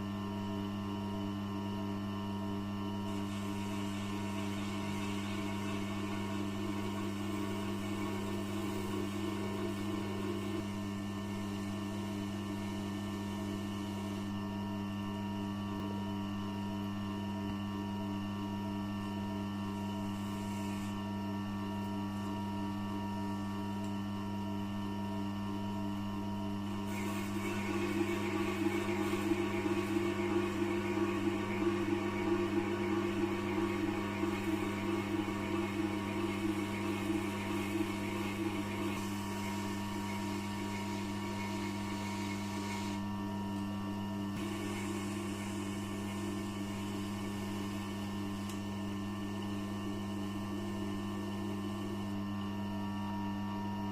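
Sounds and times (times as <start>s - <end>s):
sharpening machine motor humming: 26.6s - 43.0s.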